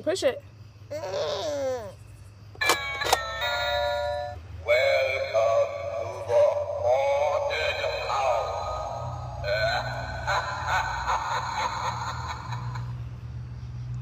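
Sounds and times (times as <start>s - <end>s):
quick clicks: 2.6s - 3.3s.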